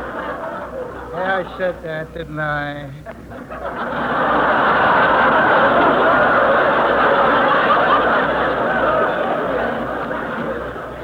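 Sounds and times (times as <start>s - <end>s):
studio audience laughing: 3.2s - 11.0s.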